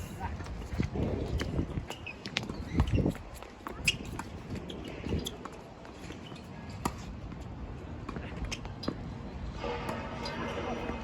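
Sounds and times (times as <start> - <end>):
strong wind on microphone: 0.5 - 1.9.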